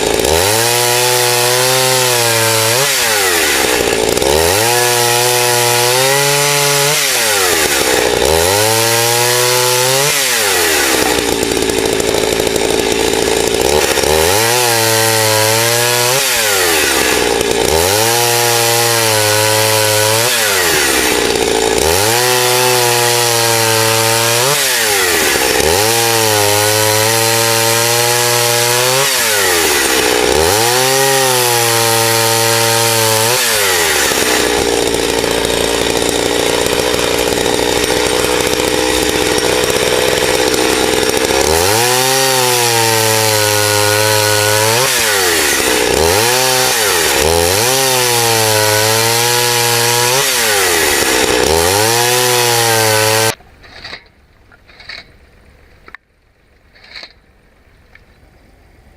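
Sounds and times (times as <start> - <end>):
chainsaw revving and cutting: 0.0 - 53.4.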